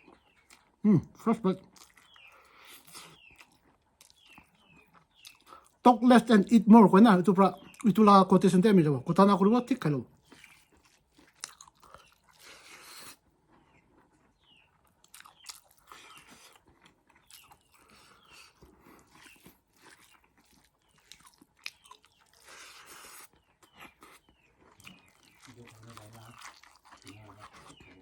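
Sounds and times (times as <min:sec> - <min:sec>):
person chewing food: 0:00.0 - 0:05.9, 0:07.5 - 0:08.0, 0:09.6 - 0:28.0.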